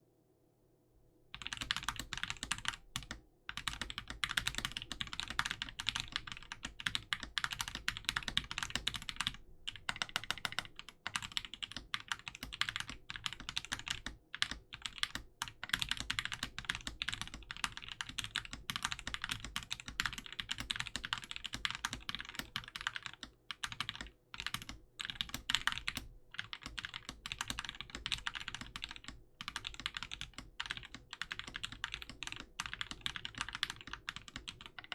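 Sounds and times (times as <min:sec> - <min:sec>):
fast typing on mechanical keyboard: 0:01.4 - 0:34.9.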